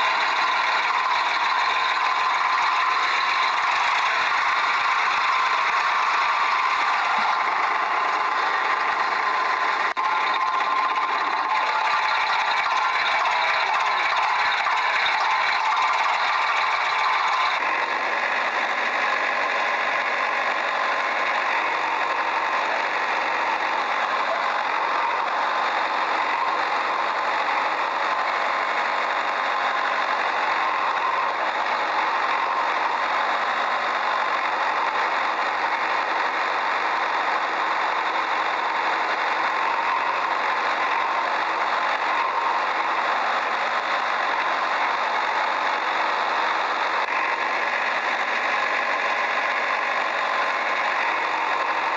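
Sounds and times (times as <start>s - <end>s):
toy vehicle motor running: 0.0s - 51.9s.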